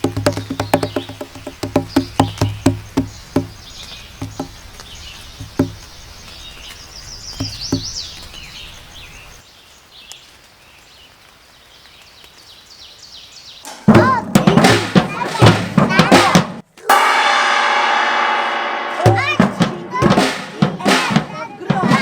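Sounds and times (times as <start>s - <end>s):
birds chirping and whistling: 0.5s - 9.4s
low ringing knocks: 4.2s - 4.5s, 13.7s - 16.3s, 16.9s - 22.0s.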